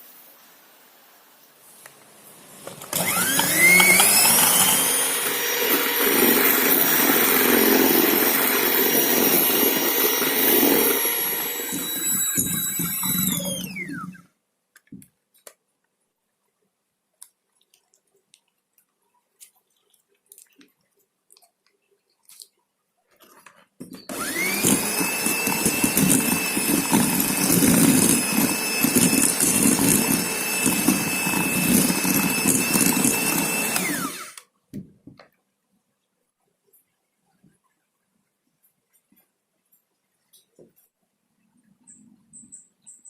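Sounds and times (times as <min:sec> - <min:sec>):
electric mixer beating batter: 0:02.7 - 0:14.2, 0:24.1 - 0:34.4.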